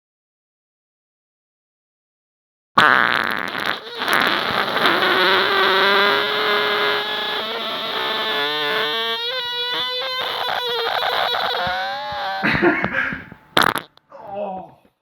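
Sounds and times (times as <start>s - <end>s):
long loud fart: 2.8s - 14.1s.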